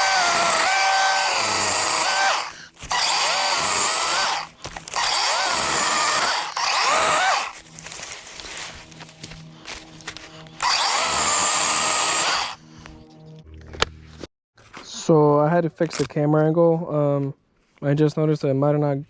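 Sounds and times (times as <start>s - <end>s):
electric chainsaw cutting wood: 0.0s - 13.0s.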